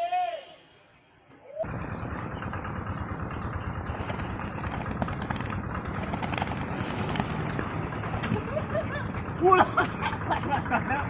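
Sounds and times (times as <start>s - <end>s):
pigeon wings flapping: 3.9s - 8.5s.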